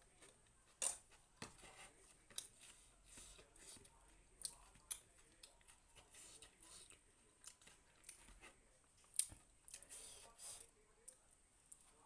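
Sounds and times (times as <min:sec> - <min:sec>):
person chewing food: 0:02.1 - 0:11.9.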